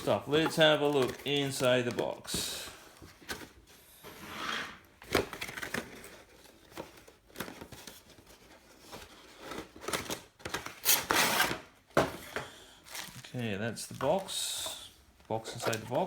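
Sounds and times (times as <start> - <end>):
cardboard scraping against cardboard: 10.8 - 11.7.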